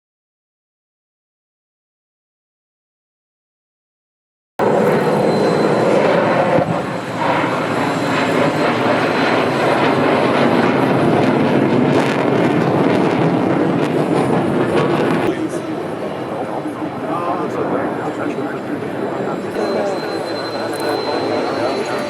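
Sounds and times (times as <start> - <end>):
jet engine roaring: 4.6 - 22.0.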